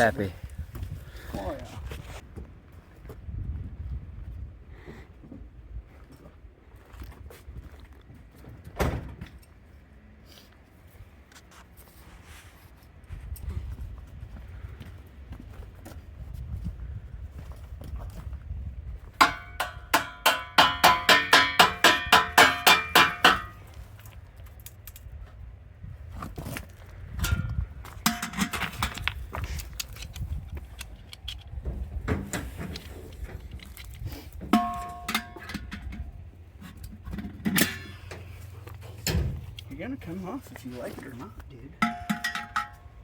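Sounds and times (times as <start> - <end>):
hammer striking metal wheel: 19.2 - 23.7, 28.1 - 28.7, 34.5 - 36.0, 41.8 - 43.0.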